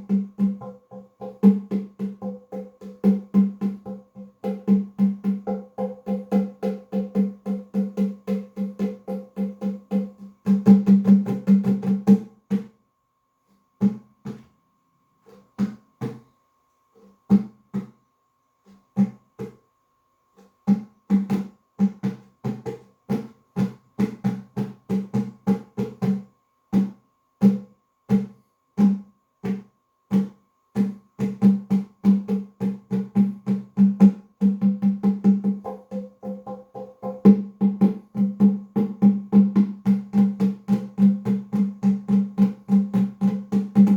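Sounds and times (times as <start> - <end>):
hand drumming: 0.0 - 12.7, 20.7 - 43.9.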